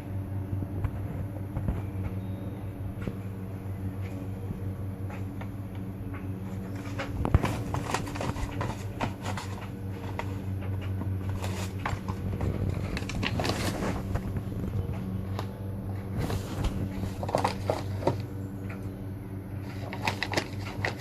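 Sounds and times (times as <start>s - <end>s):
steady low hum: 0.0s - 21.0s
puppy tearing cardboard box: 6.7s - 14.6s, 16.1s - 18.3s, 19.6s - 21.0s.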